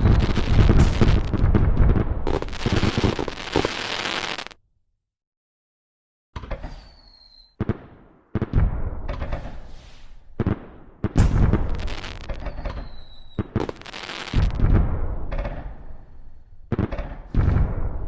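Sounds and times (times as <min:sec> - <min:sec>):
fireworks bangs and crackling: 0:00.0 - 0:04.6, 0:07.1 - 0:18.0
firework whistle: 0:06.7 - 0:07.6, 0:11.8 - 0:14.4.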